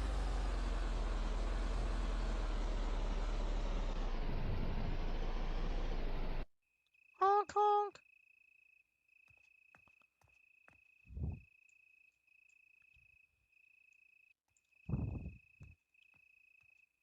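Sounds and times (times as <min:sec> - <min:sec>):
dull low thumps: 0:11.1 - 0:11.4, 0:14.9 - 0:15.4.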